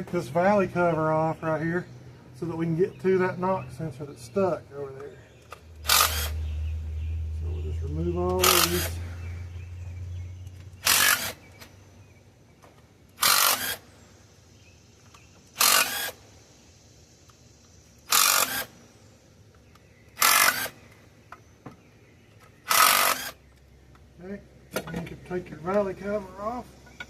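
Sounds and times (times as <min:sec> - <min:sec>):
power tool spinning bolts: 0:05.8 - 0:06.4, 0:08.4 - 0:09.1, 0:10.8 - 0:11.5, 0:13.2 - 0:13.9, 0:15.5 - 0:16.2, 0:18.0 - 0:18.8, 0:20.2 - 0:20.8, 0:22.7 - 0:23.4.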